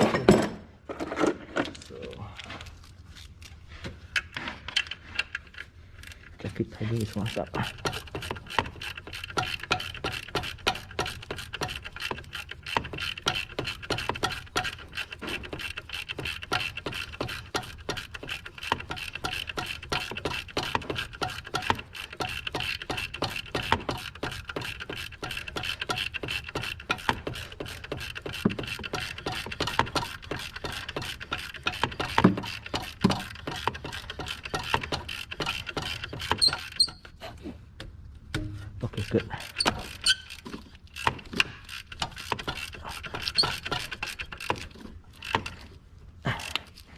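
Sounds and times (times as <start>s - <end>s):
ratchet wrench clicking: 6.9s - 37.0s, 39.1s - 45.7s.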